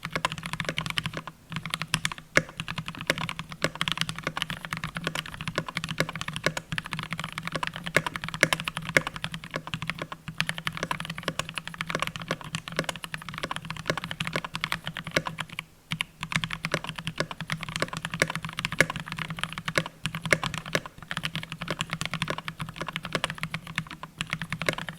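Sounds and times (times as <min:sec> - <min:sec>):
rapid mechanical keyboard typing: 0:00.0 - 0:24.9.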